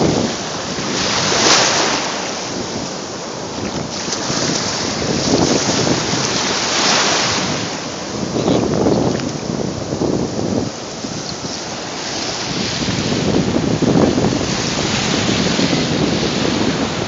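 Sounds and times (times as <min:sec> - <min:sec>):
surf breaking on beach: 0:00.0 - 0:17.0
wind buffeting microphone: 0:00.0 - 0:17.0.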